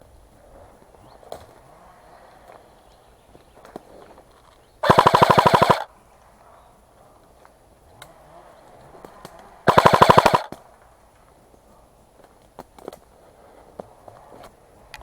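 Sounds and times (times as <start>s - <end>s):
airsoft gun full-auto burst: 4.8s - 5.9s, 9.7s - 10.6s.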